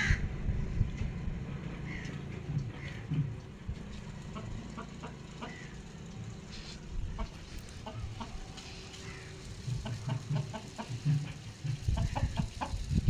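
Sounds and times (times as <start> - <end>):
chickens clucking softly: 4.3 - 5.7, 7.0 - 8.6.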